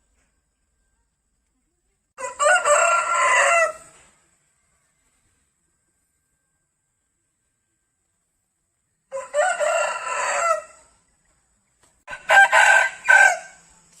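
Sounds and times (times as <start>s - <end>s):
rooster crowing: 2.2s - 4.0s, 9.1s - 10.9s, 12.1s - 13.6s.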